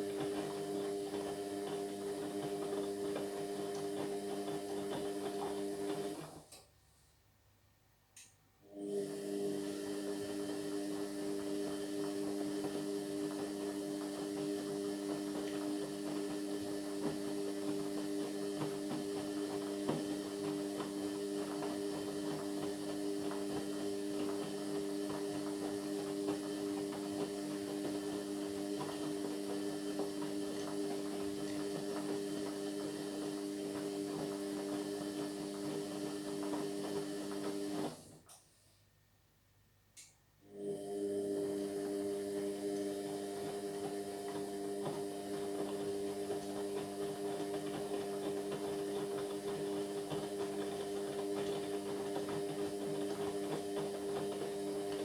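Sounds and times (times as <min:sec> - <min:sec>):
washing machine humming: 0:00.0 - 0:06.6, 0:08.7 - 0:38.3, 0:40.4 - 0:55.0
water and laundry crackling: 0:43.2 - 0:55.0.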